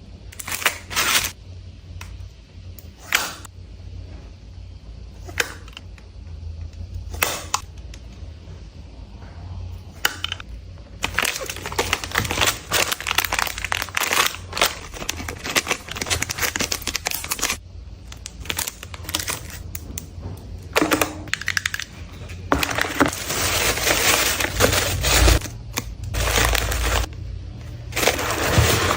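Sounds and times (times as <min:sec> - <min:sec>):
crackling crunching of crushing: 0:00.4 - 0:01.4, 0:11.0 - 0:20.0, 0:21.2 - 0:28.9.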